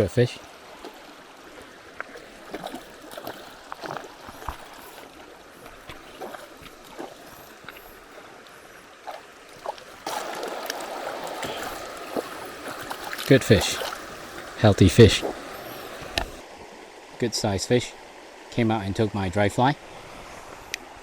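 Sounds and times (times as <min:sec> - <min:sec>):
creek water flowing: 0:00.0 - 0:21.0
small splashes and knocks: 0:00.6 - 0:08.2, 0:09.0 - 0:14.0.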